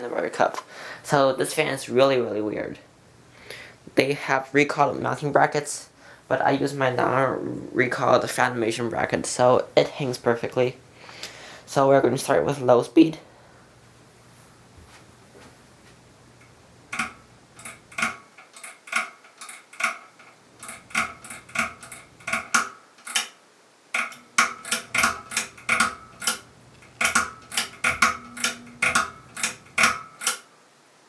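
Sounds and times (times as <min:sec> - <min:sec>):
pull-chain switch metallic clicks: 0:16.4 - 0:23.3, 0:24.0 - 0:30.5.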